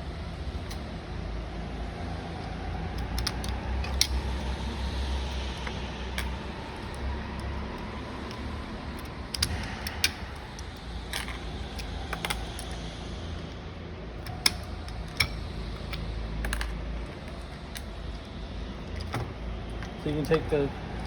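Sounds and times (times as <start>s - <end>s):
steady low hum: 0.0s - 21.0s
pliers clicking on metal parts: 2.9s - 4.6s, 5.3s - 13.5s, 14.2s - 18.3s, 19.0s - 20.7s.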